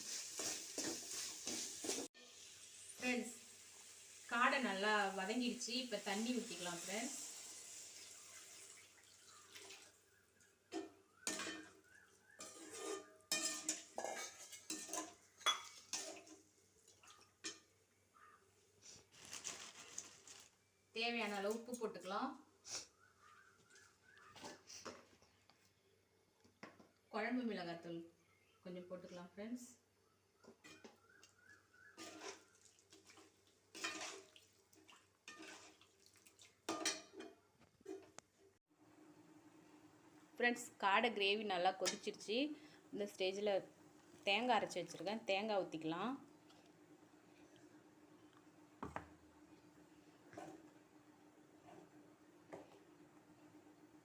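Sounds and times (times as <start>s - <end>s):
gravy sloshing in a pan: 0.0s - 2.8s, 31.1s - 36.8s.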